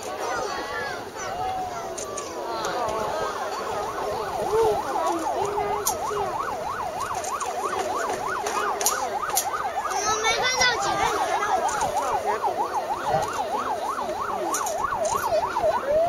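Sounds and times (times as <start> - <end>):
electronic siren yelping: 3.2 - 16.0.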